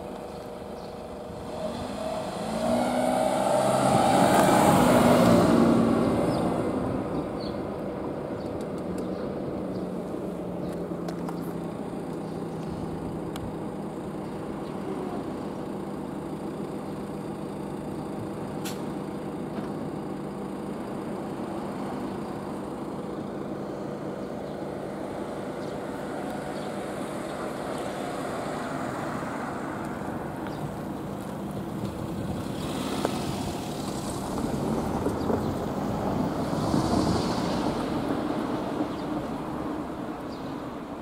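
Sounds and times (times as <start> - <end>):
low engine hum: 0.0 - 41.0
vehicle passing by: 1.4 - 7.2, 32.0 - 40.0.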